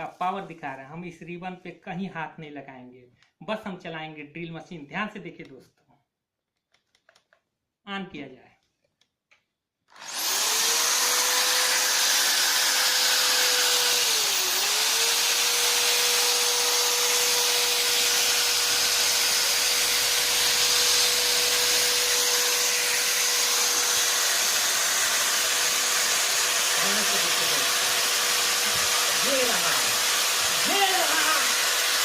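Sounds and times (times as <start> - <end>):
electric drill motor whine: 9.9 - 32.0.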